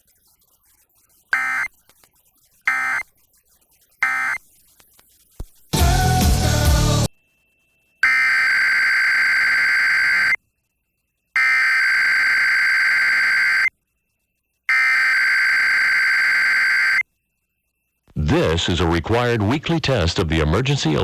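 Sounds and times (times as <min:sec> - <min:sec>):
buzzing digital data tones: 0:00.0 - 0:05.8, 0:06.5 - 0:21.0
broadcast audio: 0:18.1 - 0:21.0.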